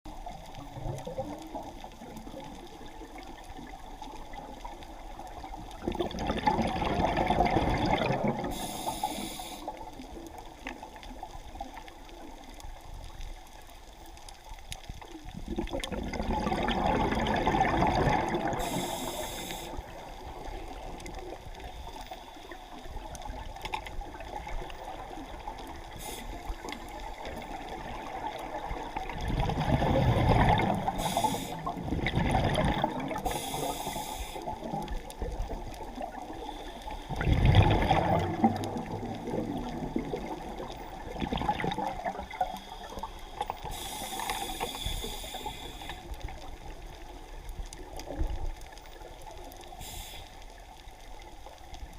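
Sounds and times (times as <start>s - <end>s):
gurgling exhaust bubbles: 5.8s - 8.5s, 15.4s - 18.9s, 27.4s - 33.4s, 37.1s - 42.5s
regulator hissing inhalations: 8.5s - 9.8s, 18.6s - 20.0s, 25.9s - 26.7s, 30.9s - 31.7s, 33.2s - 34.6s, 42.6s - 46.1s, 49.7s - 50.4s.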